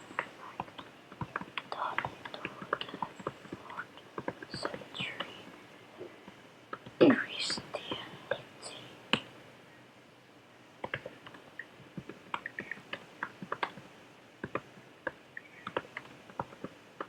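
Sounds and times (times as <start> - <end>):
typing on computer keyboard: 12.0 - 13.8, 14.4 - 16.8.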